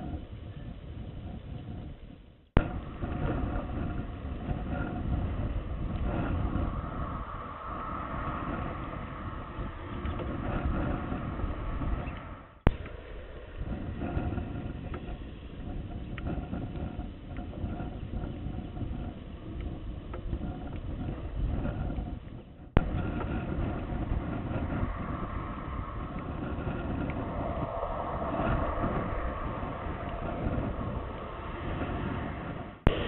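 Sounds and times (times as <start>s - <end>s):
wind rumbling on microphone: 0.0s - 33.0s.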